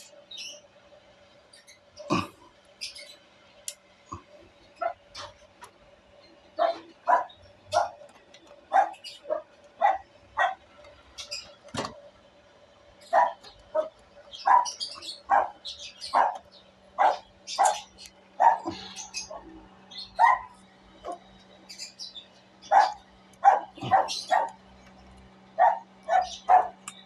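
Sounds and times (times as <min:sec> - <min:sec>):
faint steady hum: 0:00.0 - 0:27.0
dog barking: 0:06.6 - 0:08.0, 0:08.7 - 0:10.6, 0:13.1 - 0:16.4, 0:17.0 - 0:19.4, 0:20.2 - 0:20.5, 0:22.7 - 0:24.6, 0:25.6 - 0:26.8.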